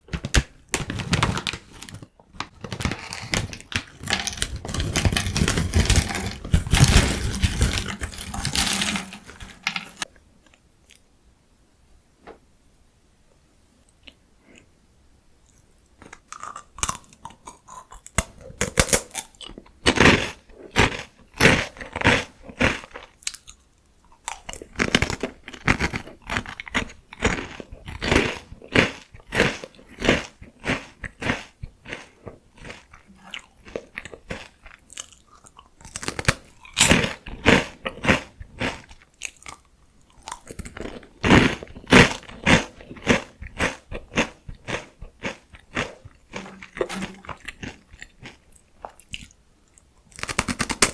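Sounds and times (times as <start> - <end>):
crunching crispy snacks: 0.1 - 10.1, 16.0 - 49.4, 50.1 - 50.9.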